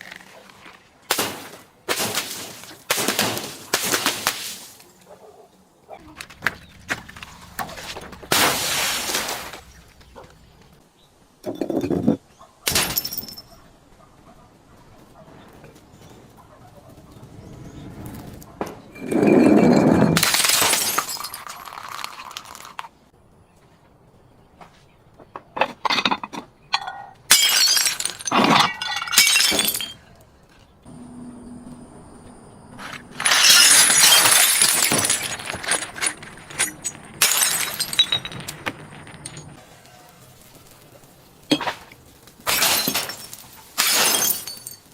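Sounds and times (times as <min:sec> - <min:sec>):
glass breaking: 0:07.6 - 0:09.8, 0:12.7 - 0:13.5, 0:19.0 - 0:22.3, 0:27.3 - 0:30.0, 0:33.1 - 0:39.6, 0:41.5 - 0:44.9
glass bottle shattering: 0:08.0 - 0:09.6, 0:12.7 - 0:13.5, 0:19.0 - 0:22.4, 0:26.8 - 0:30.0, 0:33.1 - 0:39.6, 0:41.5 - 0:44.9
glass shards ringing: 0:26.8 - 0:30.0, 0:33.1 - 0:39.6, 0:42.5 - 0:44.9.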